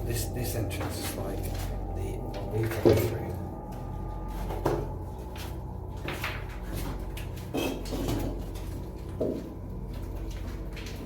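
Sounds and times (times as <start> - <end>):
steady low hum: 0.0 - 11.0
footsteps and scuffs: 8.4 - 11.0.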